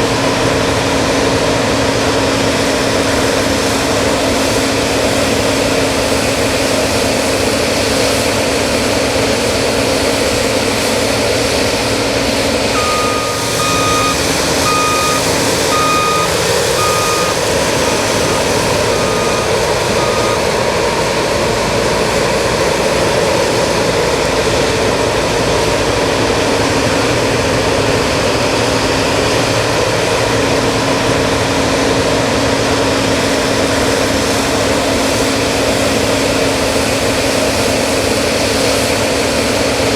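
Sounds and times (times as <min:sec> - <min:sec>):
combine harvester running: 0:00.0 - 0:39.9
electronic beeper: 0:12.8 - 0:20.6.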